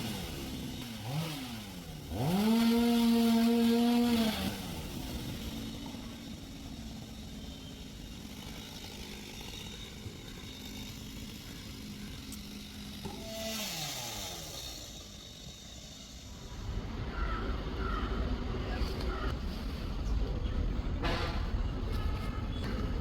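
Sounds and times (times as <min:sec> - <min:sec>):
two-stroke chainsaw idling: 0:00.0 - 0:17.3.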